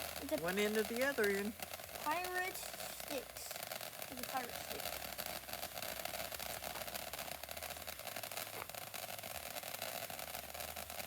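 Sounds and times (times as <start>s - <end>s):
background hiss: 0.0s - 11.0s.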